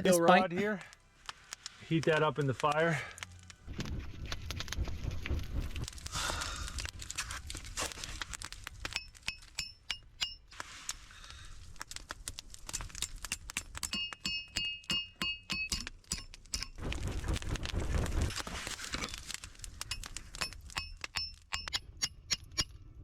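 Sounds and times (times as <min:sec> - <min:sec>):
hammer ringing on hot steel: 0:09.0 - 0:10.4, 0:13.8 - 0:16.7.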